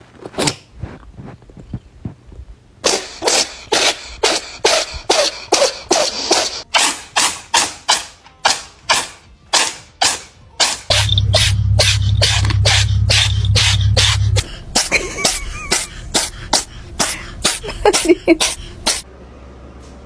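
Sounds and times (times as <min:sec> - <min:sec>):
cat sneezing: 0:02.8 - 0:07.3, 0:09.6 - 0:10.8, 0:11.8 - 0:19.0.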